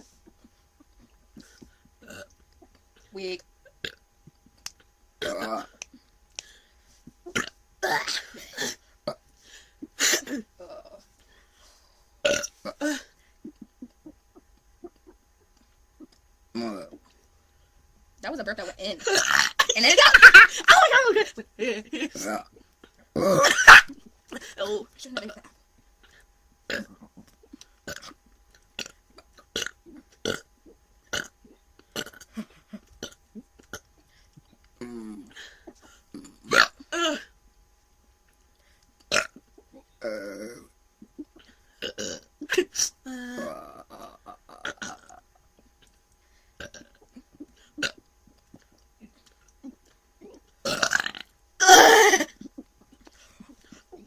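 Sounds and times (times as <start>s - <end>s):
person burping: 1.4s - 2.3s, 5.2s - 5.8s, 7.3s - 9.2s, 12.2s - 13.7s, 16.5s - 17.1s, 19.0s - 20.8s, 22.1s - 24.4s, 26.7s - 27.2s, 27.9s - 28.2s, 28.8s - 30.5s, 31.1s - 32.4s, 33.0s - 33.9s, 34.8s - 35.3s, 36.1s - 37.3s, 39.1s - 40.7s, 41.8s - 45.4s, 46.6s - 48.1s, 49.7s - 52.4s
loud belches: 12.2s - 12.5s, 29.6s - 30.5s, 31.1s - 31.3s, 36.2s - 36.8s, 39.1s - 39.4s, 41.8s - 42.3s, 43.4s - 45.2s, 50.6s - 52.0s.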